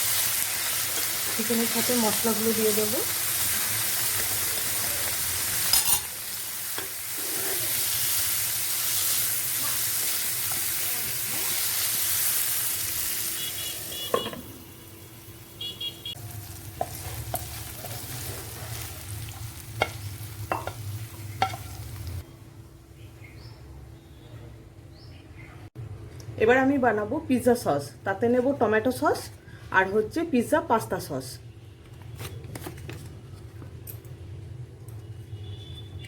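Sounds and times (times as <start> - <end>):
food sizzling in oil: 0.0 - 22.2
spoon knocking and scraping pan: 16.7 - 18.1, 19.8 - 22.0.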